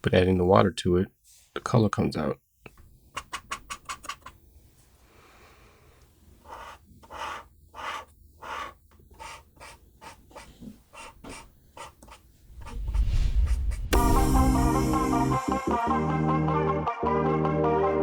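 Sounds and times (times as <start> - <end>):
pencil scratching on paper: 3.2 - 4.4, 6.4 - 14.3
low swell: 12.4 - 16.0
background music: 13.9 - 18.0.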